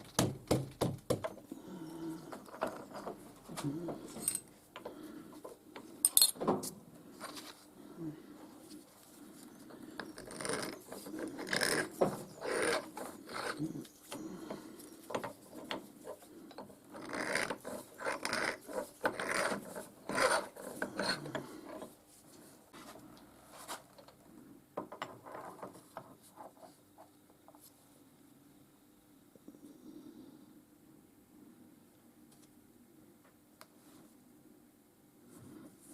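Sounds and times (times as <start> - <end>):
rasping and scraping strokes: 8.6 - 22.0.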